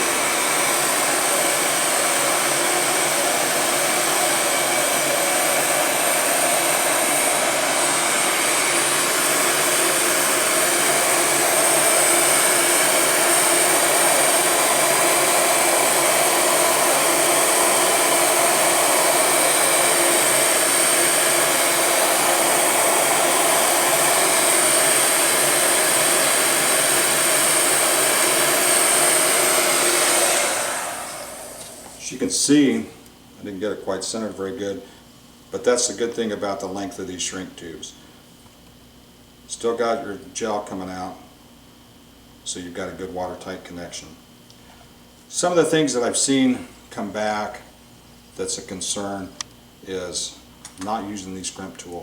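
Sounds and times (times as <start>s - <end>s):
heat gun blowing: 0.0s - 32.4s.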